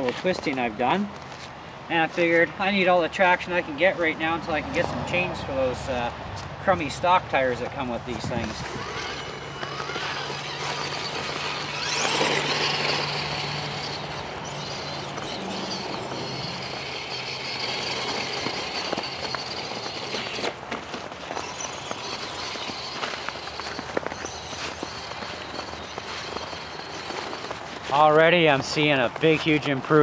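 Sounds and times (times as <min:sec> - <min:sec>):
steady low hum: 0:08.1 - 0:27.7
toy car electric motor whine: 0:08.2 - 0:27.9.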